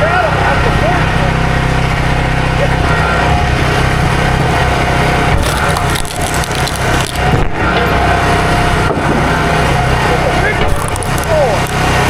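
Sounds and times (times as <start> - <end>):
small gasoline engine running: 0.0 - 12.0
wood cracking and splintering: 5.3 - 7.5, 10.6 - 11.9.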